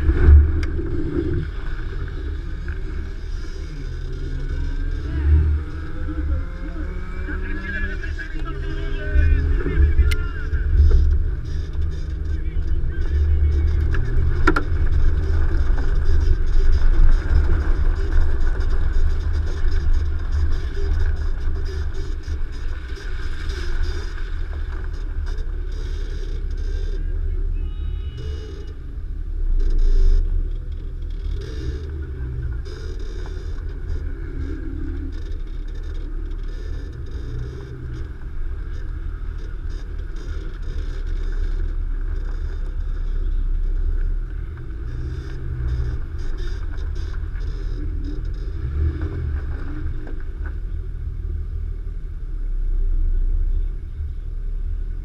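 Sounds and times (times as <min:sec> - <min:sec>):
vehicle engine rumbling: 0:00.0 - 0:55.0.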